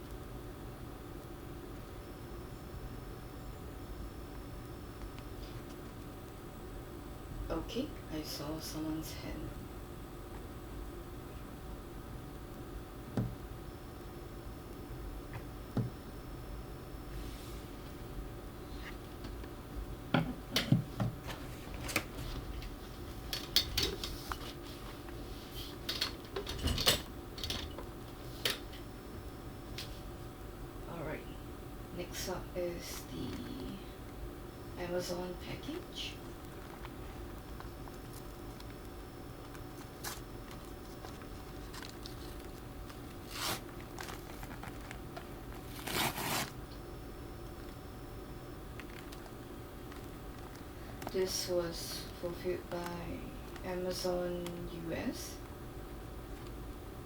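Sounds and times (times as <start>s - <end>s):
faint room hum: 0.0s - 57.0s
packaging rustling: 36.3s - 46.6s, 48.7s - 51.2s.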